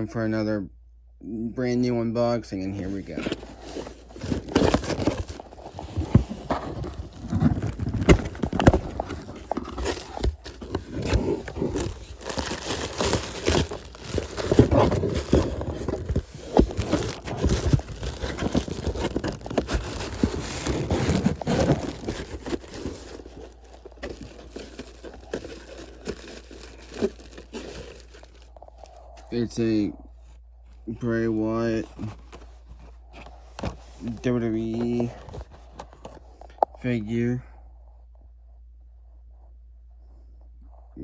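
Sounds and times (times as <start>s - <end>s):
packaging rustling and tearing: 2.8s - 29.3s, 31.8s - 36.2s.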